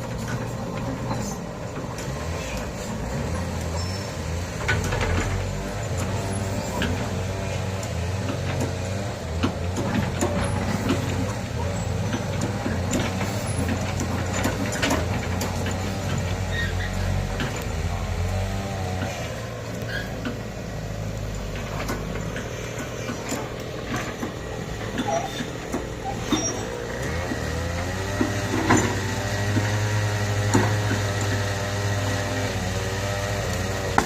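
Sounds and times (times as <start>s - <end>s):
excavator diesel engine running: 0.0s - 34.0s
knocks and clanks: 4.5s - 16.5s, 21.4s - 34.0s.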